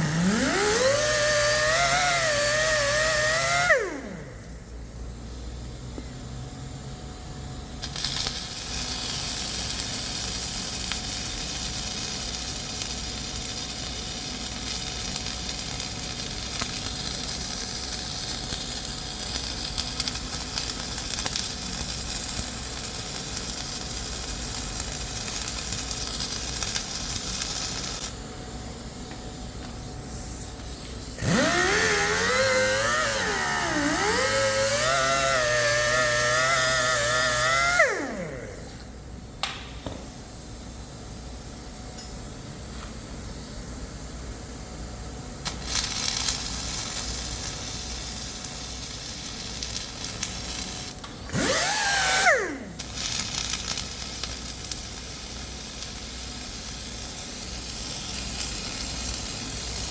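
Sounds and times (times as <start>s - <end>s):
power tool motor running: 0.0s - 4.5s, 31.2s - 38.9s, 51.3s - 53.4s.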